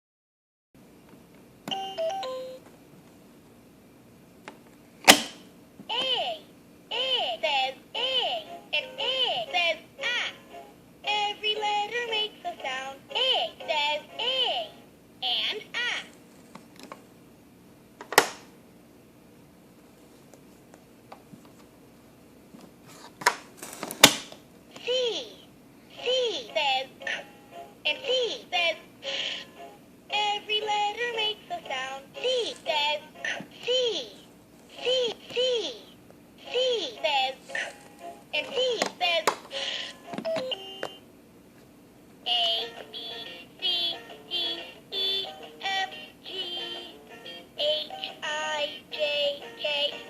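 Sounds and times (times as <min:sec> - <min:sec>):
toy electronic jingle: 0:01.7 - 0:02.6
loud sharp plastic click: 0:04.5 - 0:05.4, 0:18.0 - 0:18.5.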